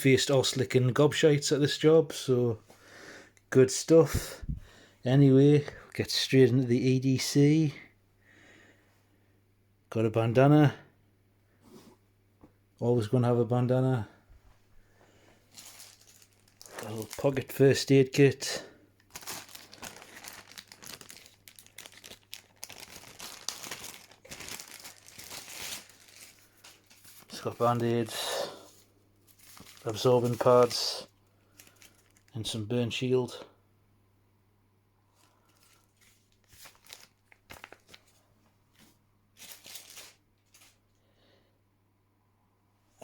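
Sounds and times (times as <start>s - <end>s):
packaging crinkling and rustling: 15.5s - 32.3s, 35.2s - 40.9s.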